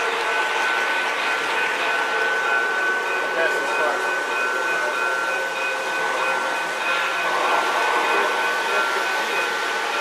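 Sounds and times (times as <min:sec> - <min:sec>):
model trains whirring: 0:00.0 - 0:10.0.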